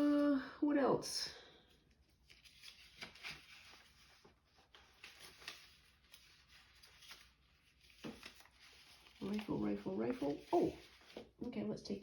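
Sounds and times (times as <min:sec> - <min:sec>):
paper rustling and tapping: 0:02.2 - 0:11.5.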